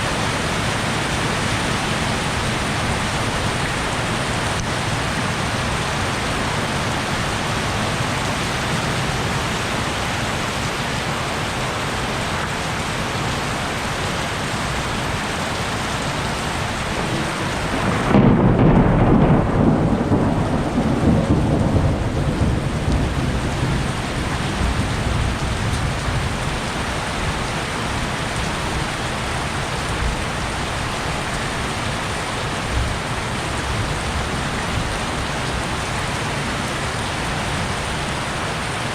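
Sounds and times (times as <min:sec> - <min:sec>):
heavy rain: 0:00.0 - 0:38.9
rumble of thunder: 0:16.8 - 0:26.7.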